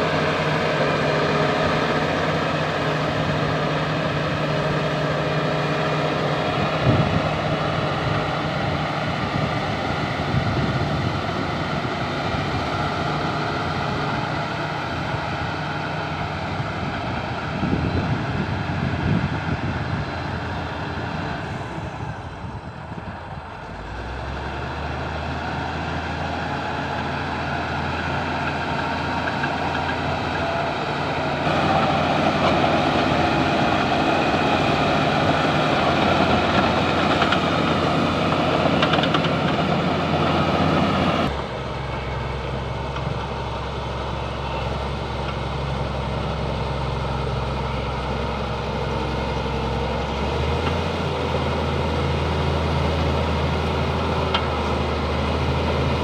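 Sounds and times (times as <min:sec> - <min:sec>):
bulldozer diesel engine droning: 0:00.0 - 0:56.0.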